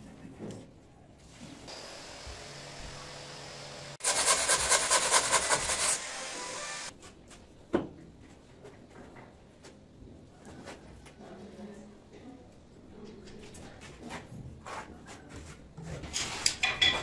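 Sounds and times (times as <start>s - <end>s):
fast rhythmic scraping strokes: 4.0s - 6.0s.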